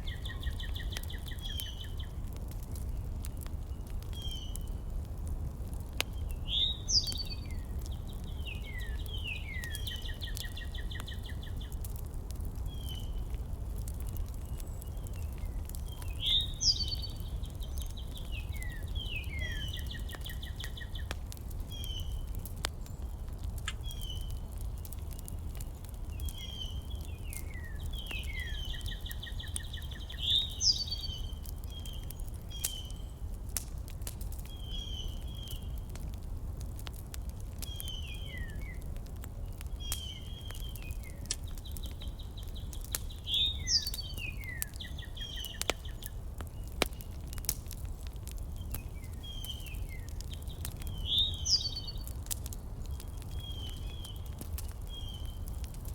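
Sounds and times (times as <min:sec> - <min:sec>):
songbird singing with a trill: 0:00.0 - 0:02.2, 0:06.3 - 0:11.6, 0:15.5 - 0:21.1, 0:26.2 - 0:33.1, 0:39.8 - 0:46.1, 0:48.6 - 0:52.1
bird chirps: 0:06.5 - 0:07.5, 0:15.9 - 0:21.0, 0:27.5 - 0:32.0, 0:43.2 - 0:46.0, 0:51.0 - 0:52.1.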